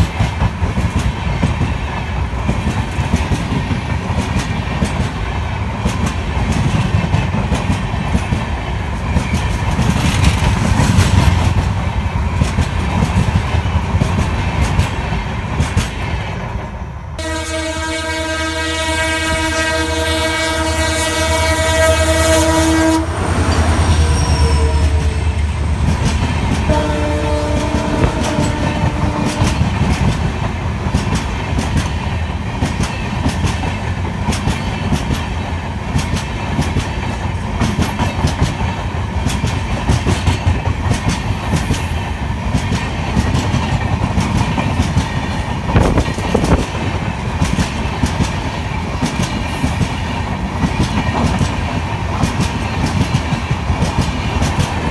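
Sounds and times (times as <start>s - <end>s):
train rumbling past: 0.0s - 54.9s
locomotive horn: 17.2s - 25.9s, 26.5s - 29.8s.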